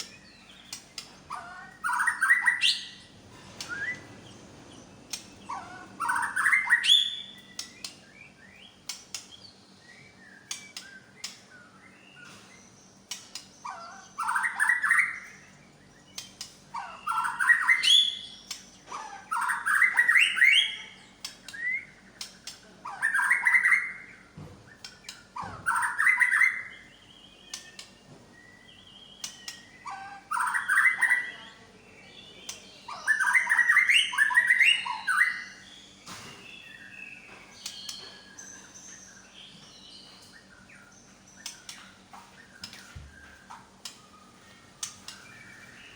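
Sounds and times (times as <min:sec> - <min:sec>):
songbird whistling: 0:03.6 - 0:04.2, 0:05.3 - 0:08.9, 0:13.6 - 0:18.6, 0:19.2 - 0:22.0, 0:23.0 - 0:31.4, 0:32.3 - 0:41.6
bird sharp ticks: 0:05.1 - 0:05.3, 0:07.5 - 0:08.0, 0:08.8 - 0:09.4, 0:13.0 - 0:13.5, 0:18.4 - 0:18.7, 0:29.2 - 0:29.7, 0:44.8 - 0:45.2.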